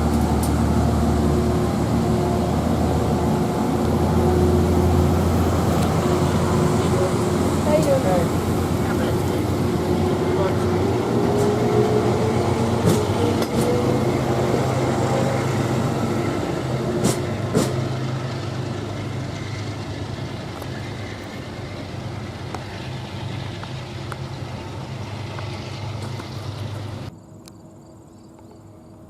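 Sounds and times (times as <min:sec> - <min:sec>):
diesel train engine hum: 0:00.0 - 0:29.0
train wheel clacks: 0:04.7 - 0:27.1.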